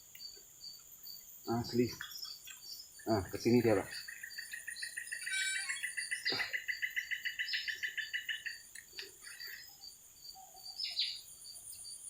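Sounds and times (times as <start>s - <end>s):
fast chirps: 1.5s - 9.9s
high-pitched insect drone: 3.0s - 8.7s.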